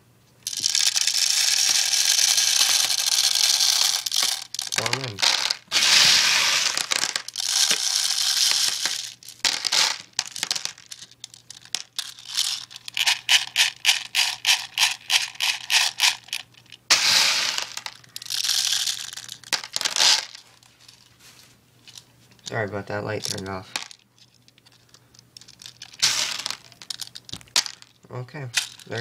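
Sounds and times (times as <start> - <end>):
quick evenly spaced rattles: 0.4 - 16.4
plastic pellets pouring rattle: 0.4 - 20.4, 24.8 - 27.9.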